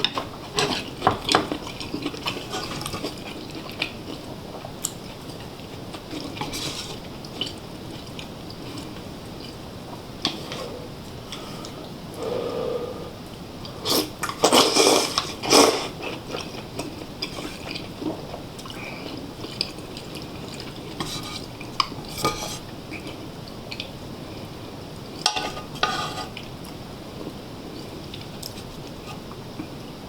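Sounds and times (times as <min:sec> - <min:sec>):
cutlery clinking on dishes: 0:25.2 - 0:26.3.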